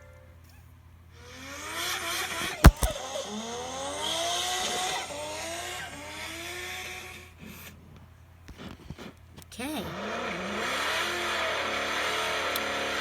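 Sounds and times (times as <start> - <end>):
sharp bang: 2.7 - 3.0.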